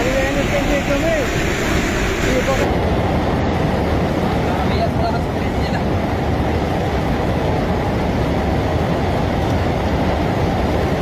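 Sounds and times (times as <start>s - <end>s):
floodwater rushing: 0.0s - 3.0s.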